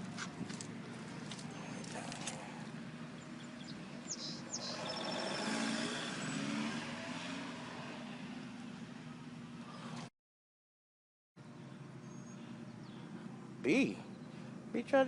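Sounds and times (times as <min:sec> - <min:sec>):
vehicle passing: 0:00.0 - 0:10.1
bird chirping: 0:01.3 - 0:06.6, 0:11.5 - 0:13.3.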